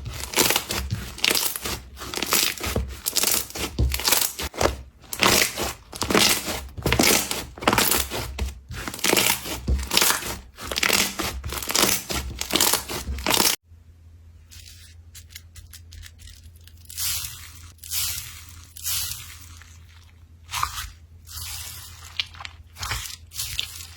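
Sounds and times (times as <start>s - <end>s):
slime crackling and popping: 0.0s - 13.6s.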